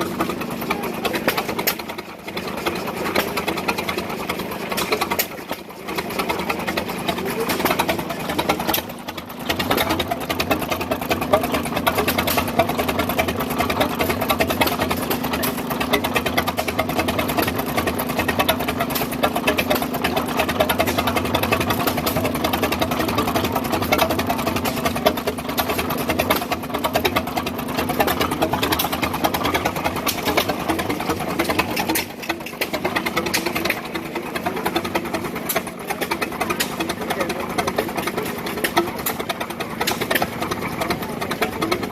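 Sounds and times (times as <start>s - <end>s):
engine clattering: 0.0s - 41.9s.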